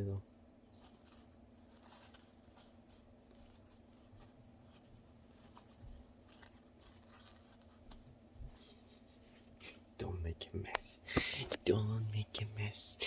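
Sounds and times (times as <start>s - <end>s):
beak nibbling clicks and scratches: 0.0s - 9.1s
faint steady hum: 0.0s - 13.0s.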